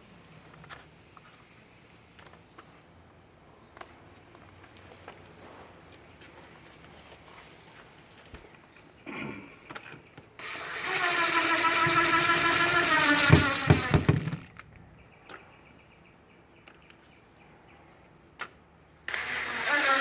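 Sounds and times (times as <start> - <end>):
power drill motor whining: 10.4 - 14.5, 19.1 - 20.0
sharp clicks: 10.4 - 14.5, 19.1 - 20.0.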